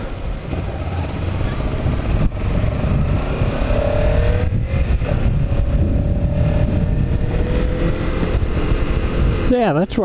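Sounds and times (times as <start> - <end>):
motorcycle engine running: 0.0 - 10.0
wind rumble: 0.0 - 10.0.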